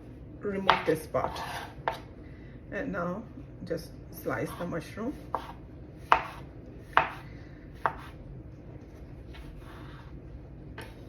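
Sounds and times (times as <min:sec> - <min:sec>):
knife scraping board: 0:00.7 - 0:02.0, 0:04.5 - 0:06.4
knife tapping cutting board: 0:06.1 - 0:06.4.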